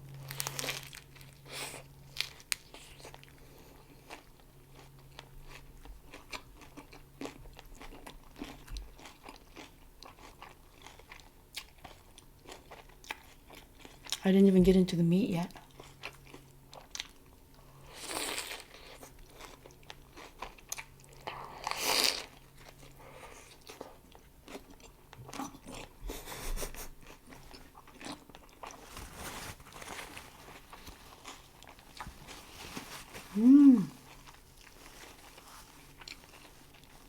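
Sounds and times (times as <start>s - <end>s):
person humming mmm: 33.3s - 34.1s.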